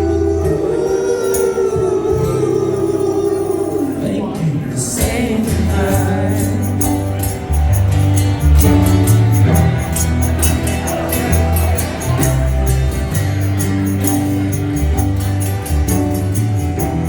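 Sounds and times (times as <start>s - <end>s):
low bass notes: 0.0s - 17.0s
strummed acoustic guitars: 0.0s - 17.0s
jingling percussion beat: 5.0s - 17.0s.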